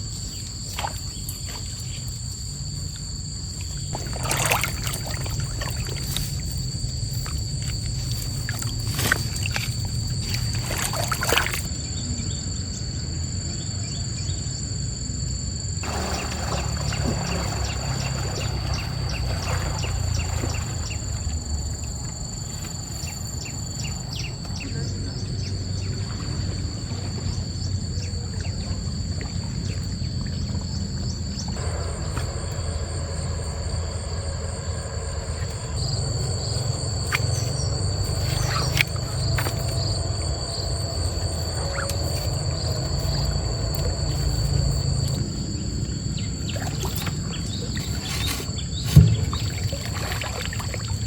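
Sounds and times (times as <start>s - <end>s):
insects droning: 0.0s - 51.0s
low rushing noise: 31.6s - 46.0s.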